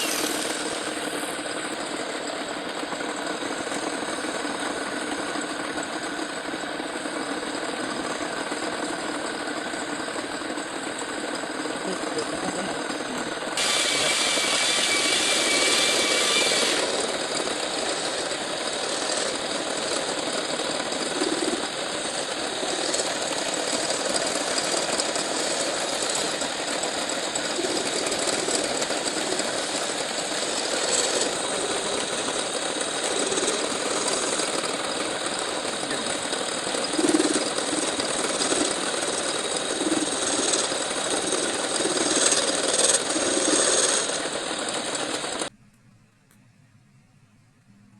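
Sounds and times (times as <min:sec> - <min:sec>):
tool cutting hiss: 0:00.0 - 0:01.8, 0:13.6 - 0:19.4, 0:20.9 - 0:45.5
high-pitched whine: 0:00.0 - 0:05.9, 0:07.1 - 0:45.6
metal lathe running: 0:00.0 - 0:45.5.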